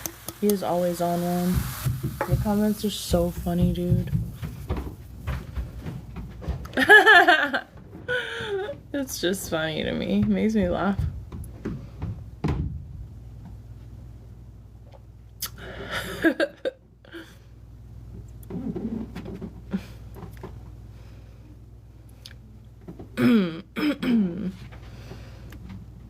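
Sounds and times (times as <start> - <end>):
woman belching: 23.2 - 24.5.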